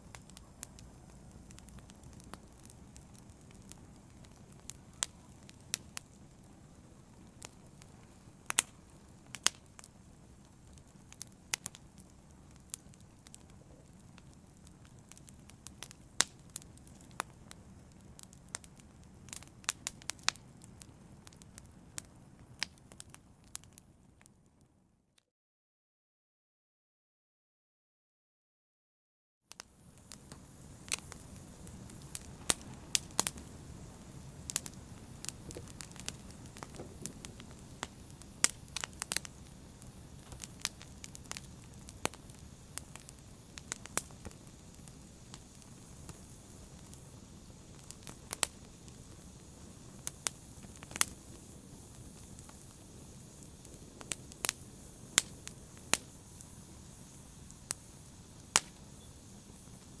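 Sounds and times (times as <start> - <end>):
low rumble of flames: 0.0 - 24.7, 29.6 - 60.0
wood fire crackling: 0.0 - 24.7, 29.5 - 60.0.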